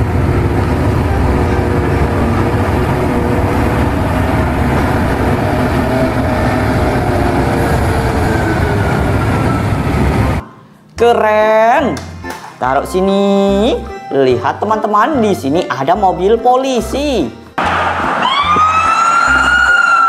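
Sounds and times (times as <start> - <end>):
haul truck engine rumbling: 0.0 - 10.4.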